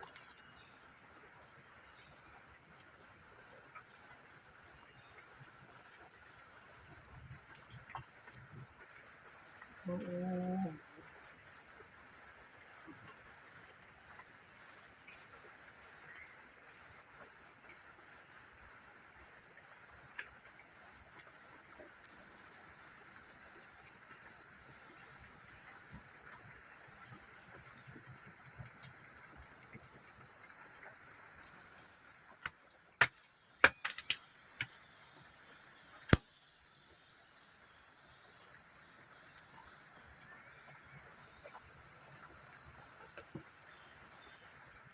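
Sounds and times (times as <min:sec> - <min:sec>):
high-pitched insect chorus: 0:00.0 - 0:44.9
sharp knocks: 0:33.0 - 0:34.2.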